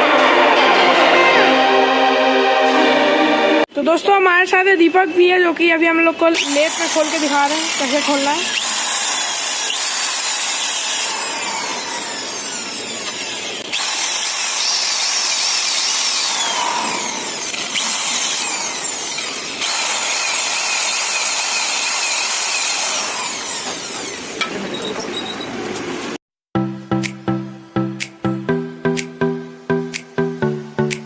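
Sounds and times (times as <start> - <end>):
metal lathe cutting: 6.4 - 25.1.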